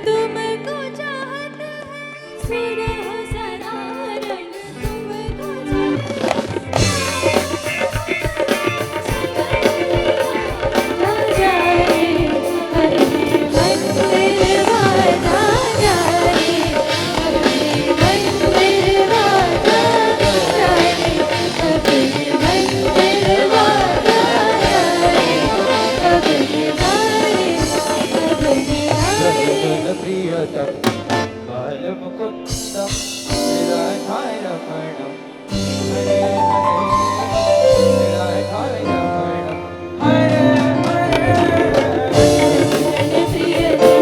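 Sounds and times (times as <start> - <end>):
steady drum beat: 2.4 - 31.5, 32.5 - 34.8, 35.5 - 39.0, 40.4 - 44.0.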